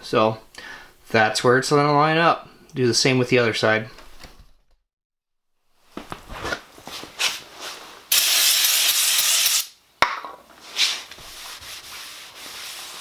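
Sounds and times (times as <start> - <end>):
loud steady hiss: 8.1 - 9.8.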